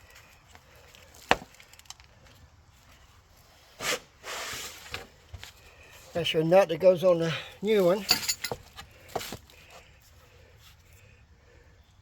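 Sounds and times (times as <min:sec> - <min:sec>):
scraping rustle of metal parts: 0:07.6 - 0:09.8.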